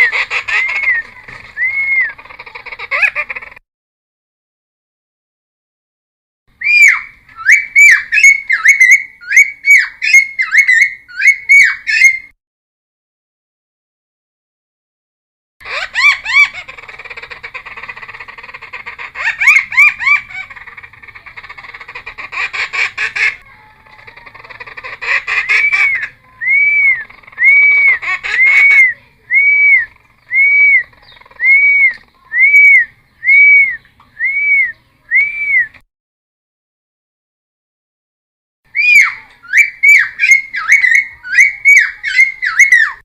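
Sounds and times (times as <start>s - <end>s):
bird singing whistled notes: 0.5s - 2.2s, 6.6s - 12.3s, 25.4s - 35.8s, 38.7s - 43.0s.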